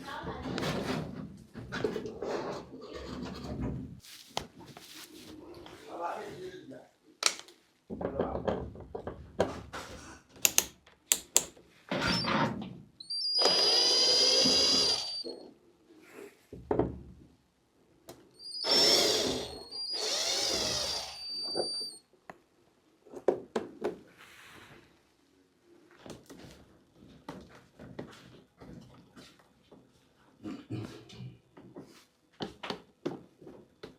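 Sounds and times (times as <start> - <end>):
handling clicks and knocks: 10.4 - 11.6
power drill whine: 13.1 - 15.4, 18.4 - 22.0.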